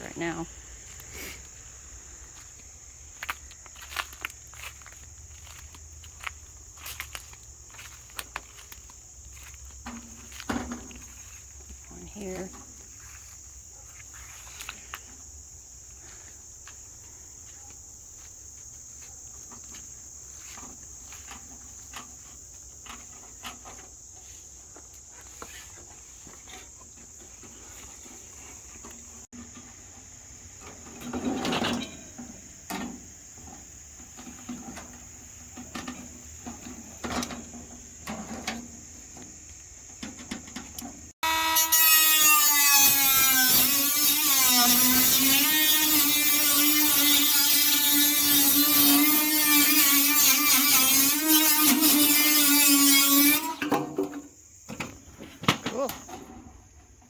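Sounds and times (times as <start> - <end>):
insects chorus: 0.0 - 57.0
power drill running: 41.2 - 53.6.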